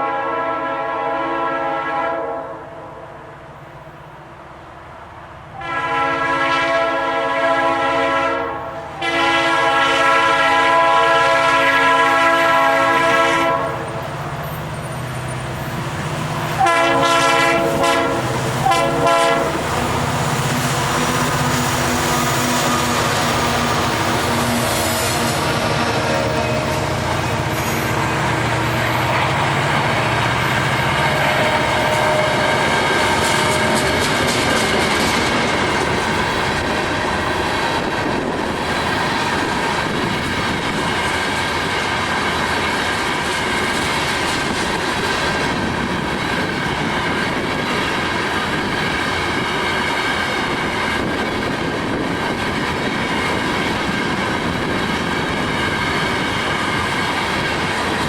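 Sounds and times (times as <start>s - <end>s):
diesel locomotive hum: 0.0s - 58.0s
wheels clicking over rail joints: 25.5s - 58.0s.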